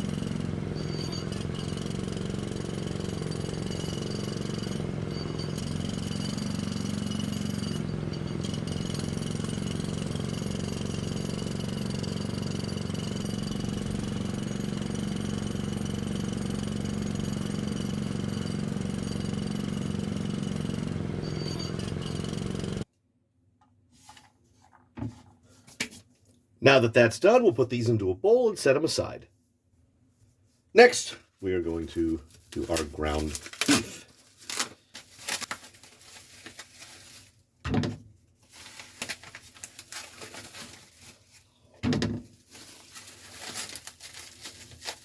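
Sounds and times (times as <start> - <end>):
small electric motor humming: 0.0 - 22.8.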